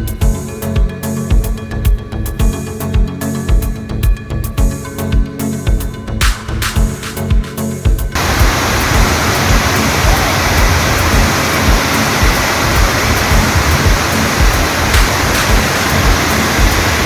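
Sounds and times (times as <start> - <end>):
background music: 0.0 - 17.0
waterfall rushing water: 8.2 - 17.0.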